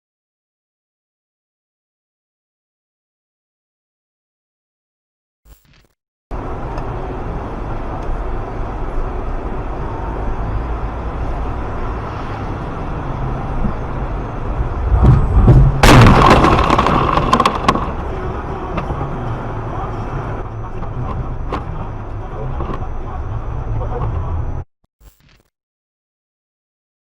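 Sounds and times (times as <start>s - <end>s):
car driving noise: 6.3s - 24.7s
car collision crash: 14.8s - 18.2s.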